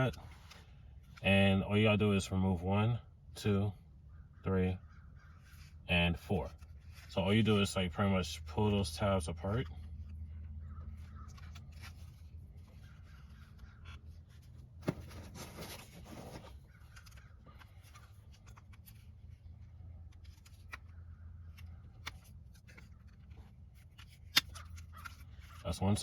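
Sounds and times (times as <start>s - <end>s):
plastic scraping: 9.5s - 26.0s.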